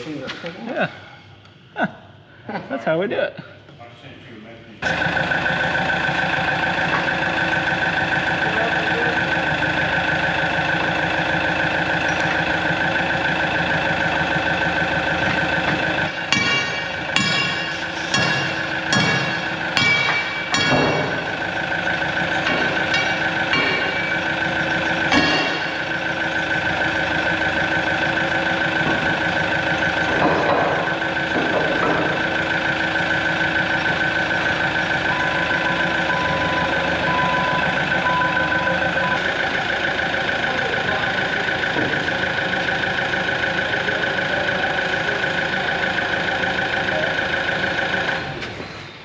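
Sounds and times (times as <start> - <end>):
diesel engine running: 4.8 - 49.0
high whine: 12.0 - 42.4
short beeps: 35.1 - 39.4.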